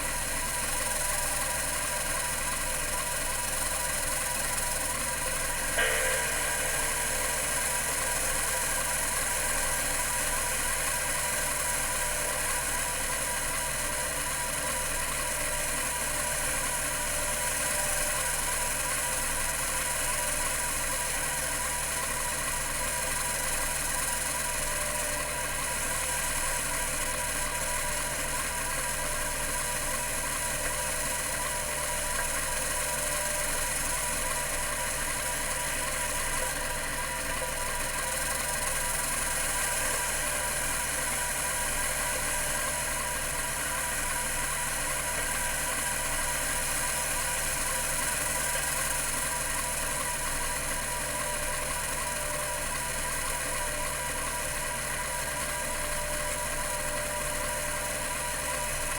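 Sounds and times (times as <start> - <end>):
hard drive humming: 3.5 - 10.3
high hiss: 5.8 - 8.8.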